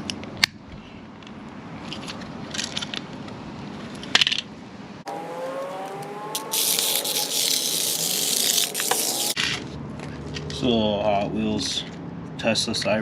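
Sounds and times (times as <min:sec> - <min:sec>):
small electric motor whining: 0:05.1 - 0:09.4.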